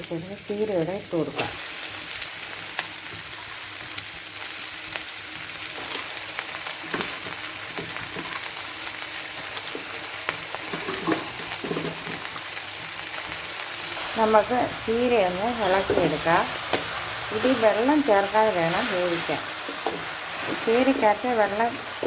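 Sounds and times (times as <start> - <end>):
vegetables sizzling in oil: 0.0 - 22.0
spatula scraping a pan: 10.7 - 12.3.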